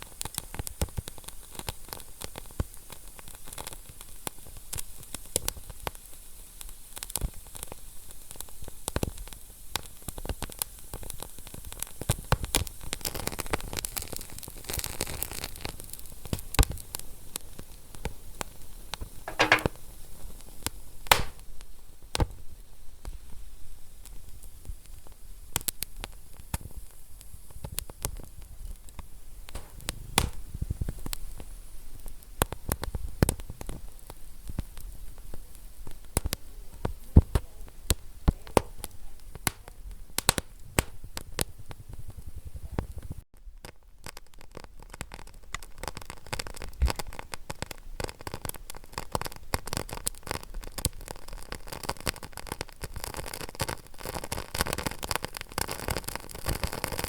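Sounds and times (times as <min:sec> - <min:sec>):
wood fire crackling and popping: 0:00.0 - 0:18.4, 0:19.3 - 0:19.8, 0:21.1 - 0:22.3, 0:24.0 - 0:57.0.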